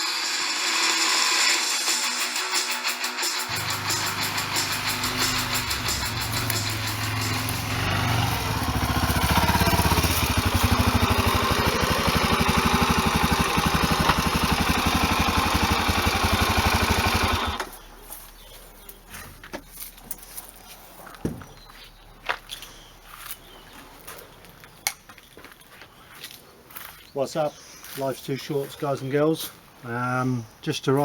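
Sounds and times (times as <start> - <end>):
motorcycle engine idling: 3.5 - 18.0.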